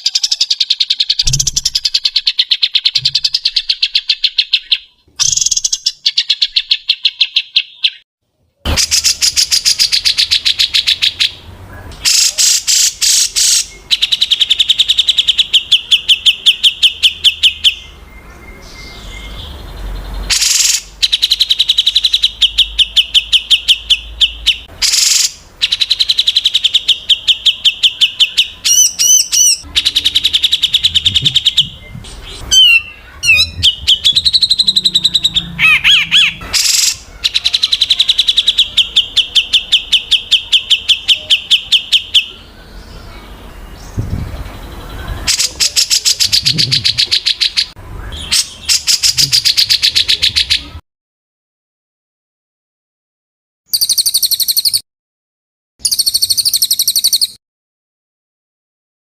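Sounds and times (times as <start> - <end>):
songbird trills: 0.0 - 8.0, 12.0 - 50.8, 53.7 - 54.8, 55.8 - 57.4
bird whistled phrases: 20.3 - 43.3, 53.7 - 54.8, 55.8 - 57.4.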